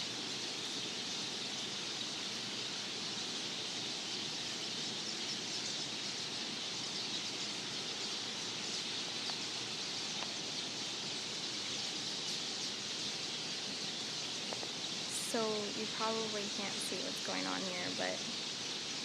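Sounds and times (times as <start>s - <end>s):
flock of birds chirping: 0.0s - 19.0s.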